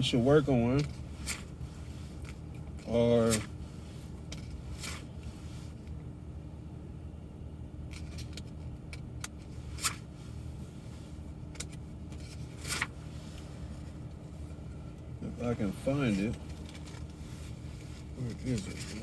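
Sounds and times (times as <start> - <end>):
car cabin hum: 0.0 - 19.0
rustles and clicks of searching: 15.8 - 19.0.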